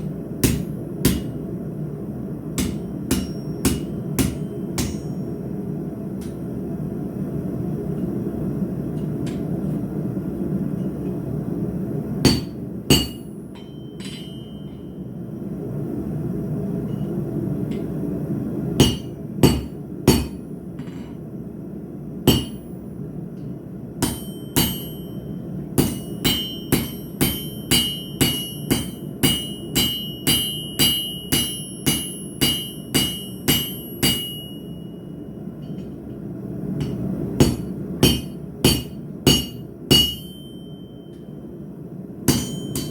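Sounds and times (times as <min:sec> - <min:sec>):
hammer striking steel on anvil: 0:00.0 - 0:01.4, 0:02.6 - 0:05.5, 0:12.2 - 0:15.0, 0:18.8 - 0:21.2, 0:22.3 - 0:22.7, 0:24.0 - 0:36.0, 0:36.8 - 0:41.4, 0:42.2 - 0:42.9.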